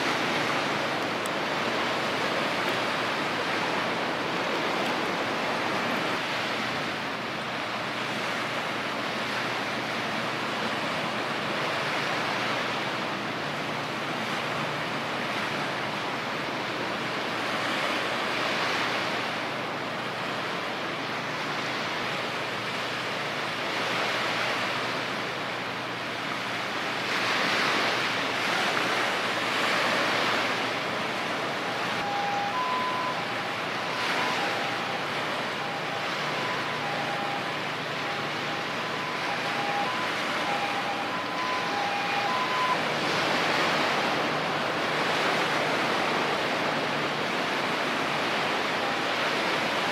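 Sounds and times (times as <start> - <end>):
sea water washing: 0.0 - 49.9
faint high tones: 31.6 - 44.5.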